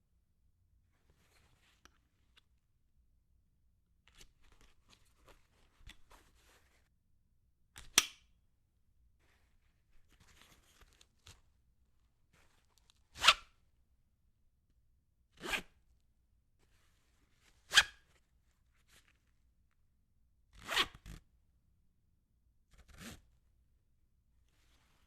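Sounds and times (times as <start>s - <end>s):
strap pulled through buckle: 4.1s - 6.8s, 17.4s - 18.2s, 20.6s - 21.2s, 22.7s - 23.3s.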